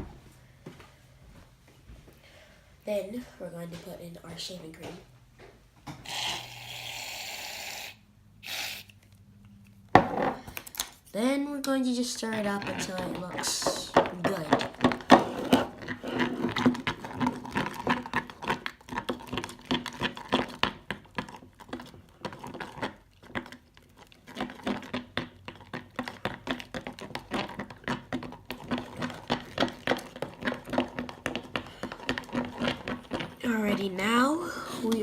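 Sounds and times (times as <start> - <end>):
stirrer scraping and tapping in bowl: 11.6 - 35.0.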